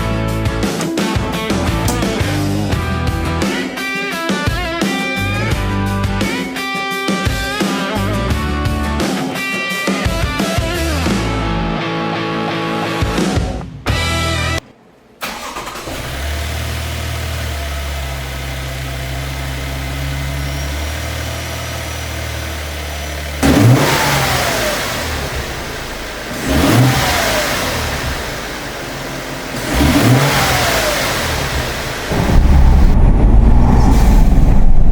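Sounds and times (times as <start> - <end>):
engine starting and idling: 15.2 - 33.0
engine revving: 15.2 - 34.9.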